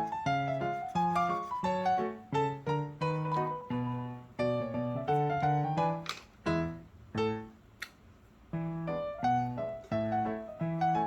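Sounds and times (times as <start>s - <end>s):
keyboard melody: 0.0s - 7.6s.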